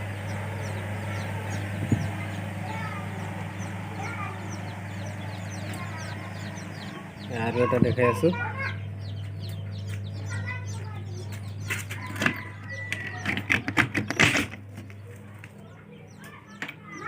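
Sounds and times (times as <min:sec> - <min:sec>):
chicks peeping: 0:00.0 - 0:17.0
incubator humming: 0:00.0 - 0:17.0.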